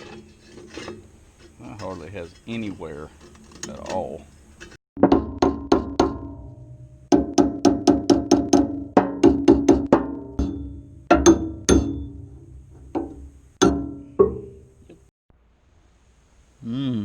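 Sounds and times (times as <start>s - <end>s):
hammer striking metal: 5.0s - 15.1s.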